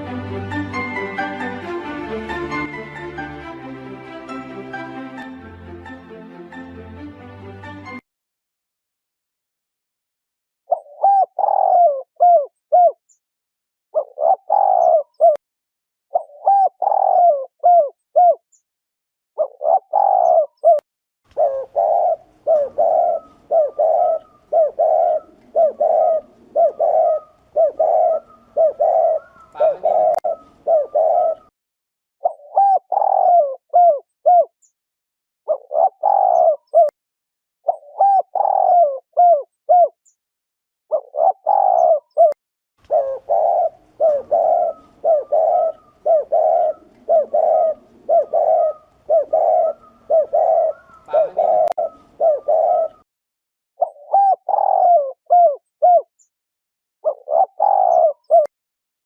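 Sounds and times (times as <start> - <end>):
dove cooing: 10.7 - 13.0, 14.0 - 15.4, 16.1 - 18.4, 19.4 - 31.5, 32.2 - 34.5, 35.5 - 36.9, 37.7 - 39.9, 40.9 - 53.0, 53.8 - 56.1, 57.0 - 58.5.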